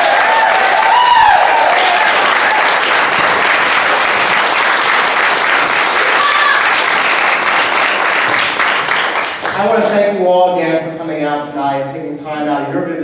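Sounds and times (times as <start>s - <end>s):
audience applauding: 0.0s - 9.7s.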